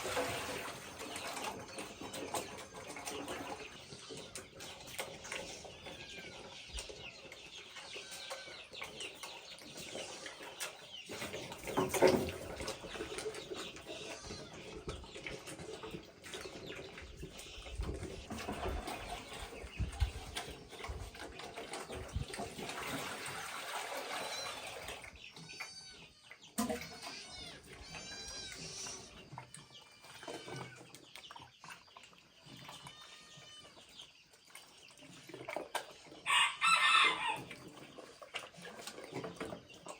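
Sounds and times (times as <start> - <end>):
chickens clucking: 0.0 - 32.8, 33.7 - 39.9
rooster crowing: 36.3 - 37.4.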